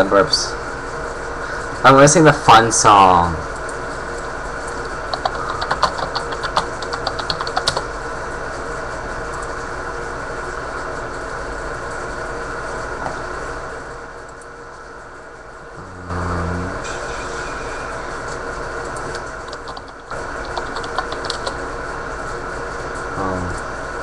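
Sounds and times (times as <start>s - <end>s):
steady hum: 0.0s - 24.0s
computer keyboard typing: 4.8s - 7.9s, 19.0s - 21.6s.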